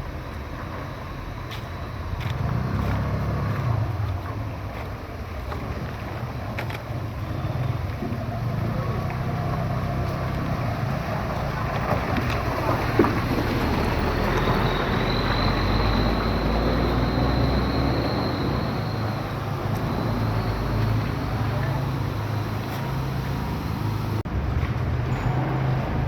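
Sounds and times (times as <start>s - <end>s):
vehicle engine running: 0.0s - 26.0s.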